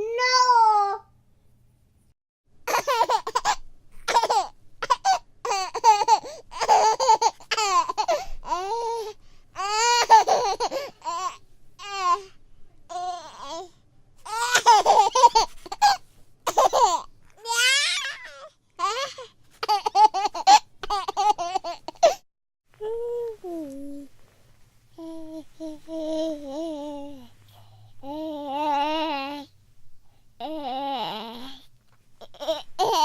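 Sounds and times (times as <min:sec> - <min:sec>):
baby laughing: 0:02.7 - 0:08.7, 0:09.6 - 0:11.4, 0:14.3 - 0:22.2, 0:32.3 - 0:33.0.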